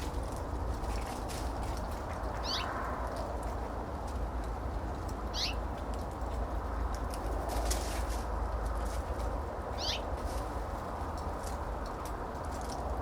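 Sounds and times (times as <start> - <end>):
outdoor background hum: 0.0 - 13.0
bird squeaky calls: 5.4 - 5.6.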